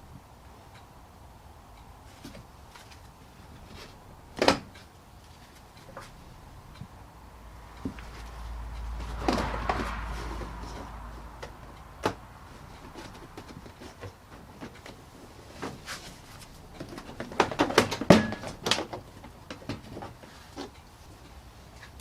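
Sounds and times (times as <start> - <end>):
hand tools clicking and knocking: 7.7 - 22.0.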